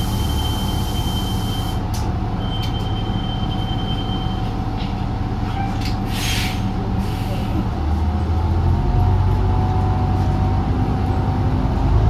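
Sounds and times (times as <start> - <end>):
bus engine rumble: 0.0 - 12.0
hiss: 6.1 - 7.6.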